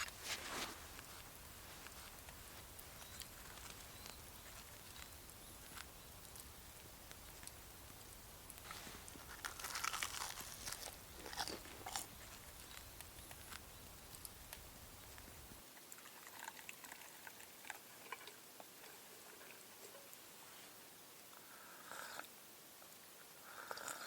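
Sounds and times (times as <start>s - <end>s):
crunching and crackling: 0.0s - 18.3s.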